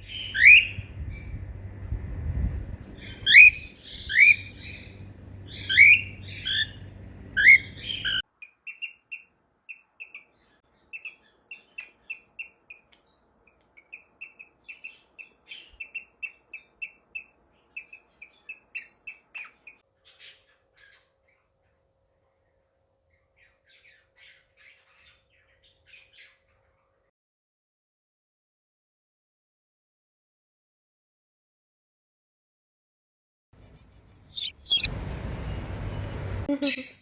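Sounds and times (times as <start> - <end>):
parrots squawking: 0.0 - 1.6, 2.9 - 8.9, 34.4 - 34.9
parrots chirping: 0.0 - 13.2, 13.8 - 21.0, 34.4 - 34.9, 36.5 - 37.0.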